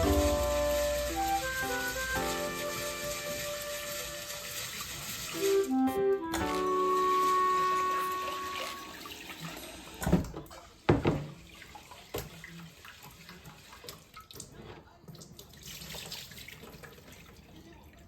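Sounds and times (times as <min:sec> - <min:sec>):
tap running into sink: 0:06.3 - 0:12.4.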